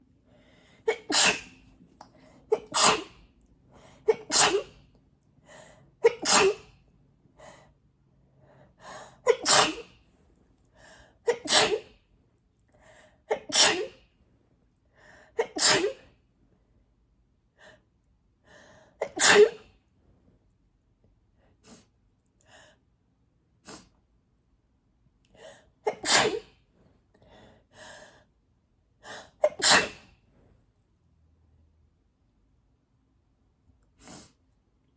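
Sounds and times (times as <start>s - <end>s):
woman sneezing: 0.9s - 1.6s, 2.5s - 3.2s, 4.1s - 4.8s, 6.0s - 6.7s, 9.2s - 10.0s, 11.3s - 11.9s, 13.3s - 14.0s, 15.4s - 16.1s, 19.0s - 19.7s, 25.9s - 26.6s, 29.4s - 30.1s.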